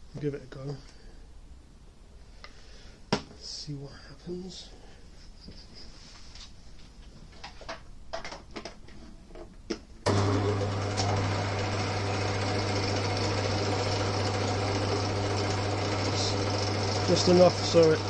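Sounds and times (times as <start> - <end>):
lathe motor humming: 10.1 - 18.0.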